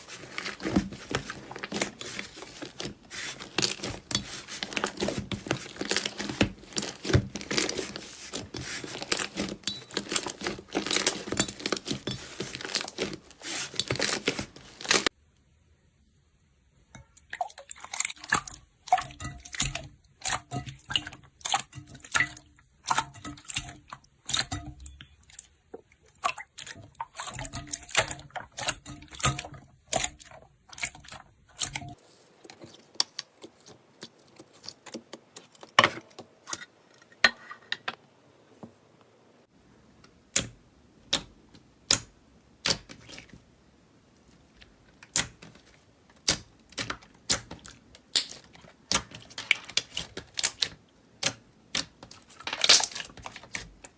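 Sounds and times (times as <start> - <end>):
slime squeezed with wet pops: 46.2 - 53.6.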